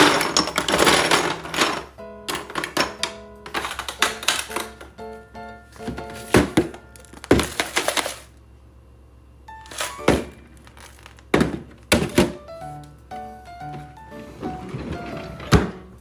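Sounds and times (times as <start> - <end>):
background music: 1.2 - 7.2, 11.9 - 16.0
containers knocking in refrigerator: 5.8 - 8.1, 11.2 - 12.5.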